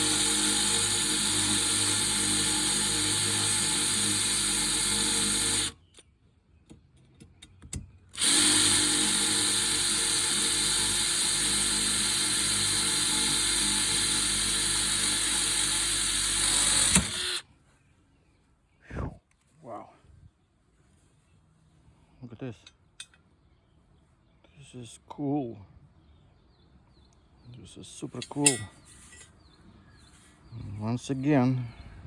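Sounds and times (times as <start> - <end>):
impact drill drilling into steel: 0.0 - 5.8, 8.2 - 17.4.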